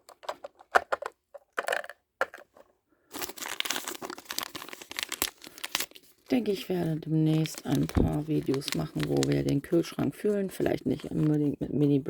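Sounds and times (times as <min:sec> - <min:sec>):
plastic toy pieces clicking: 0:00.0 - 0:02.5
plastic wrapper crinkling and tearing: 0:03.1 - 0:10.4.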